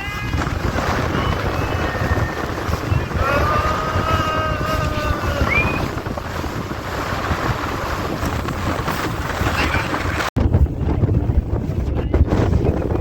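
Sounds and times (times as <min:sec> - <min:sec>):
water rushing: 0:00.0 - 0:10.3
wind buffeting microphone: 0:00.0 - 0:13.0.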